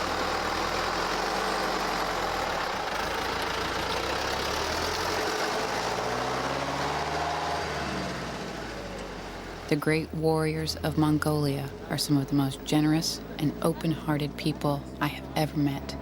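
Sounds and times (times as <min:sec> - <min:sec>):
motor vehicle engine running: 0:00.0 - 0:16.0.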